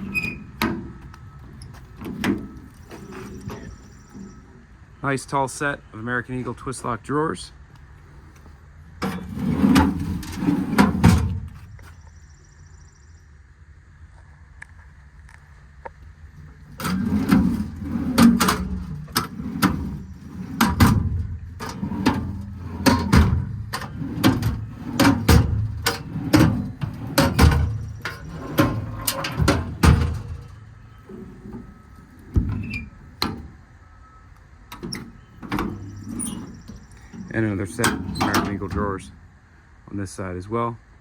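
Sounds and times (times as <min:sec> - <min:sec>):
compartment door clunks: 0:16.8 - 0:30.5.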